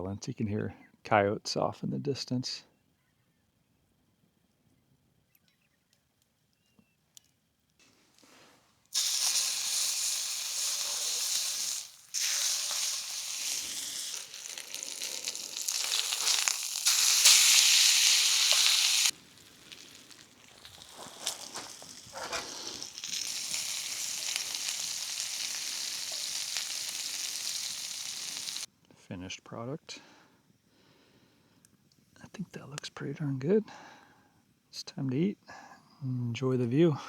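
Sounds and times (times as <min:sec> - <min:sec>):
food sizzling in a pan: 0:08.3 - 0:28.7.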